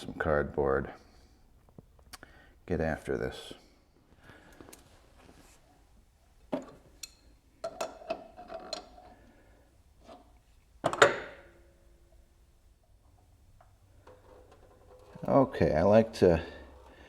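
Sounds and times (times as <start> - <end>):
tools and parts clattering: 6.6 - 9.2, 14.0 - 15.3.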